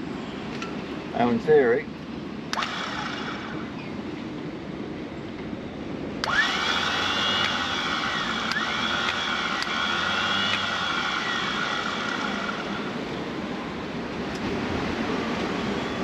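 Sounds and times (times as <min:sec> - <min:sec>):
electric motor whine: 0:02.6 - 0:03.8, 0:06.2 - 0:13.1
switch click: 0:08.5 - 0:09.8.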